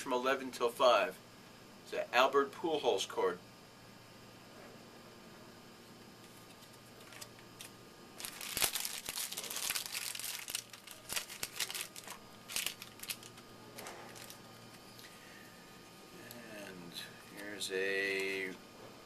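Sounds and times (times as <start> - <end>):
wrapper tearing and crinkling: 7.0 - 14.4.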